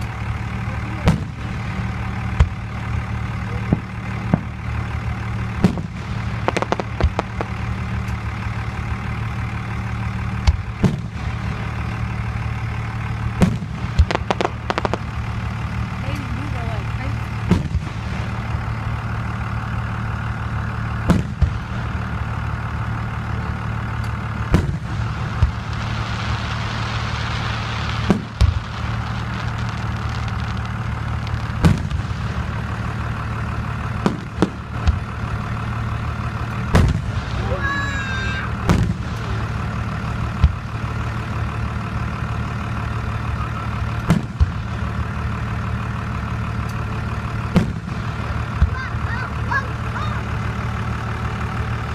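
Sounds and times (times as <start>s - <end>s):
low steady hum: 0.0s - 51.9s
fireworks bangs: 0.7s - 8.9s, 10.2s - 19.4s, 20.7s - 35.6s, 36.5s - 41.2s, 43.6s - 45.2s, 47.4s - 50.2s
firework whistling glide: 24.8s - 32.6s.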